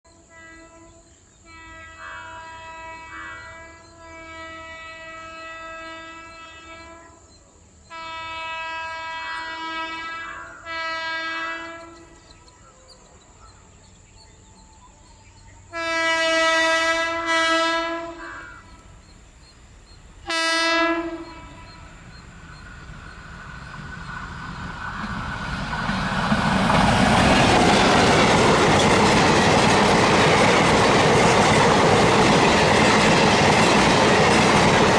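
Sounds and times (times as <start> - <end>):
locomotive horn blasts: 0.1 - 7.3, 7.9 - 12.2, 15.7 - 18.8, 20.3 - 22.0
train rumble and wheel clatter: 0.1 - 34.9.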